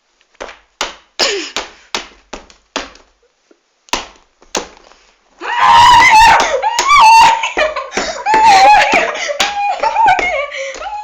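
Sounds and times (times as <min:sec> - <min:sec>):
sharp slaps or knocks: 0:00.4 - 0:03.1, 0:03.9 - 0:04.8.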